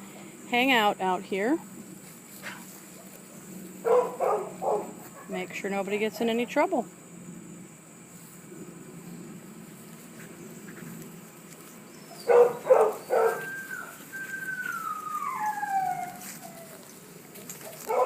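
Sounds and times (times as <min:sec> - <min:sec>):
dog barking: 0:03.8 - 0:05.4, 0:12.2 - 0:13.5, 0:17.7 - 0:18.0
dog whining: 0:12.1 - 0:16.9.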